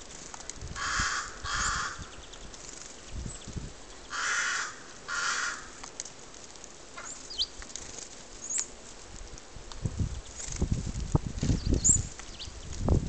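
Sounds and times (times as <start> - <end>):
crow calling: 0.8 - 2.2, 4.1 - 5.8.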